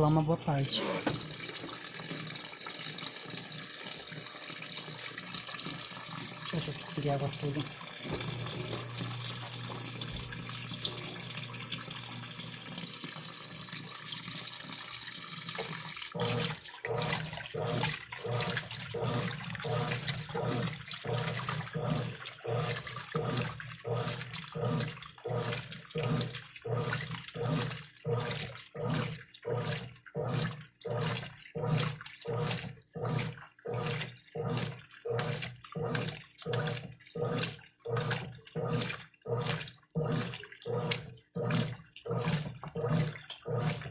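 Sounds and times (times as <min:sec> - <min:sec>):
washing machine agitator humming: 0:00.0 - 0:43.9
water running into washing machine: 0:00.0 - 0:43.9.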